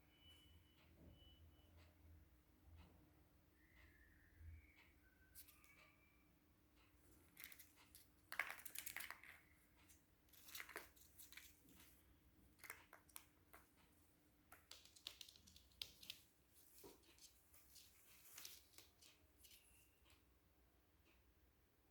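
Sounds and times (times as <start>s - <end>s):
faint rustling: 13.6s - 20.0s.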